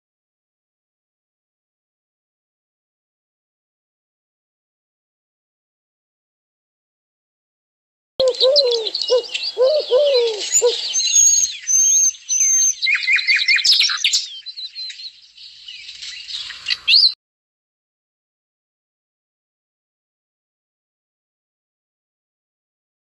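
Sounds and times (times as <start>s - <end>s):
lower repeated bird call: 8.2s - 15.0s
birds chirping and singing: 8.2s - 17.2s.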